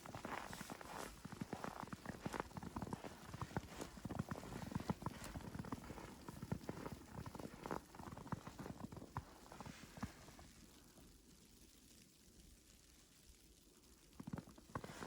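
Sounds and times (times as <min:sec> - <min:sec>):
footsteps crunching in snow: 0:00.0 - 0:10.4, 0:14.7 - 0:15.0.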